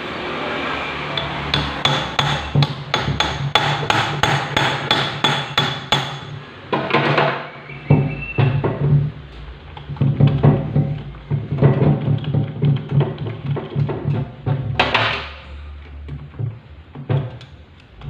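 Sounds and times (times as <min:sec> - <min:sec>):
hammer striking metal: 0:01.1 - 0:08.8.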